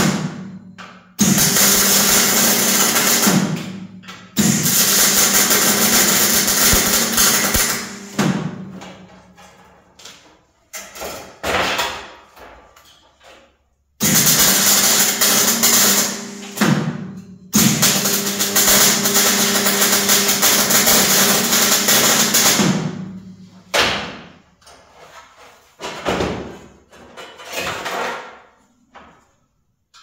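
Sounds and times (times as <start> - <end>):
power tool cutting sheet metal: 1.2 - 3.4, 4.4 - 8.2, 14.0 - 16.8, 17.6 - 22.7.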